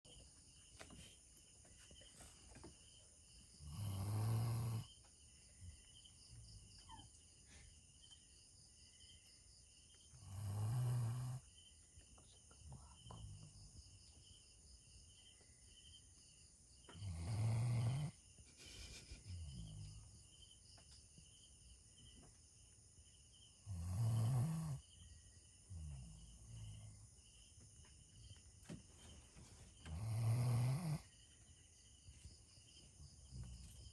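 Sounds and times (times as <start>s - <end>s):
dog snoring: 3.6s - 5.0s, 10.2s - 11.5s, 16.9s - 20.1s, 23.6s - 24.9s, 25.7s - 27.1s, 29.8s - 31.1s.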